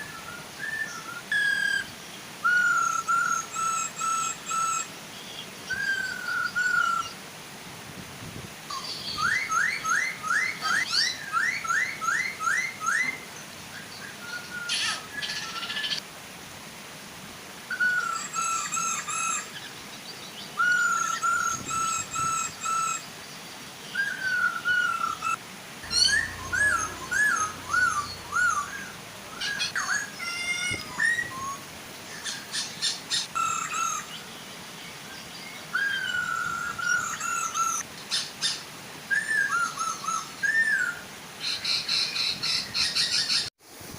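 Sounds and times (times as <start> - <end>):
birds calling with whistled notes: 0.0 - 7.3, 8.7 - 16.0, 17.7 - 43.5
waterfall hiss: 0.0 - 43.9
high bird chirps: 24.0 - 31.6.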